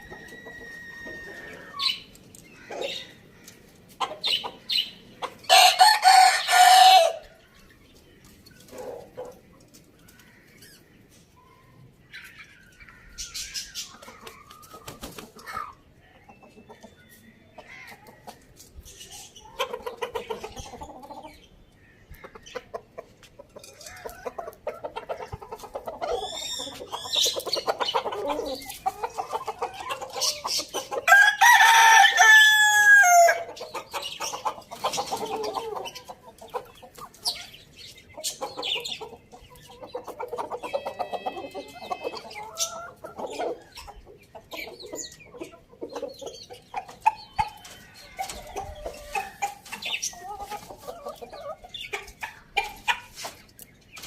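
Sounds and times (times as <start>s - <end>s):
rooster crowing: 0.0s - 1.8s, 5.5s - 7.2s, 31.1s - 33.5s
chickens clucking: 0.0s - 54.0s.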